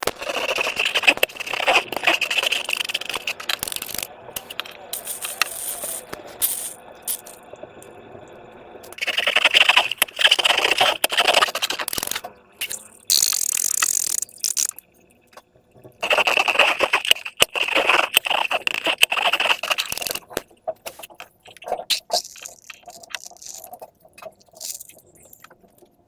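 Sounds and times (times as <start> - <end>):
slime crackling and clicking: 8.9 - 14.8, 21.0 - 25.8.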